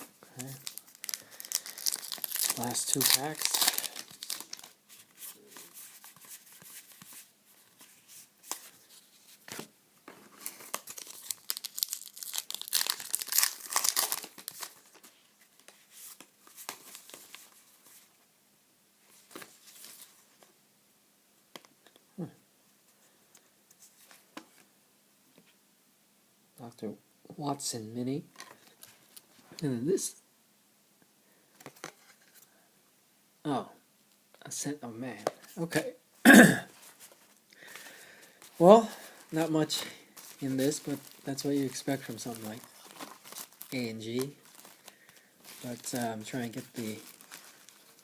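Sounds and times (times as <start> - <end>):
wrappers tearing and crinkling: 0.0 - 4.8, 10.4 - 15.0, 38.5 - 48.0.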